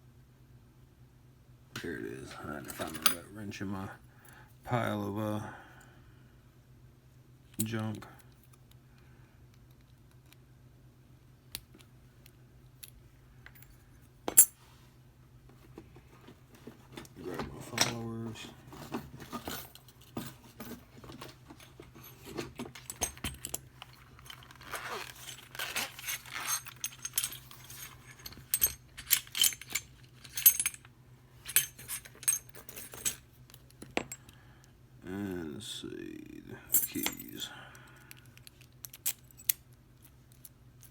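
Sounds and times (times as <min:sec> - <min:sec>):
metal lock parts clicking: 0:21.5 - 0:30.9, 0:31.5 - 0:34.3, 0:38.1 - 0:40.9.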